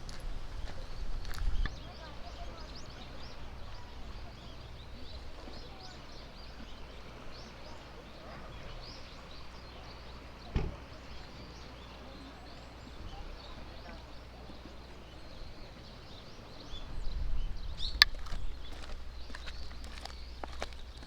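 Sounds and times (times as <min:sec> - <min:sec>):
low outdoor rumble: 0:00.0 - 0:21.0
small birds chirping: 0:00.0 - 0:21.0
thump: 0:10.5 - 0:10.8.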